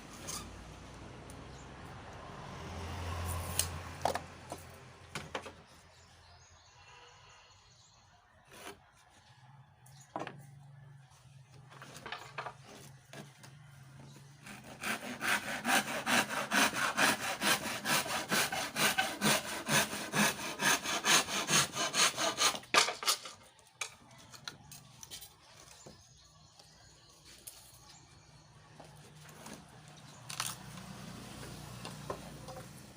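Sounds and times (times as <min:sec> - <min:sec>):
handsaw cutting wood: 0:14.4 - 0:22.7.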